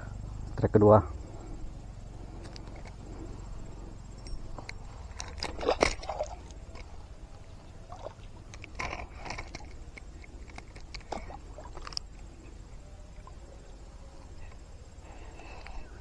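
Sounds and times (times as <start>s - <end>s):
fish thrashing and splashing water: 5.1s - 7.0s, 7.8s - 9.8s.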